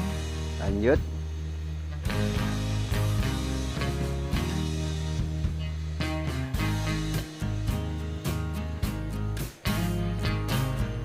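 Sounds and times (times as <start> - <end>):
guitar: 0.0 - 11.0.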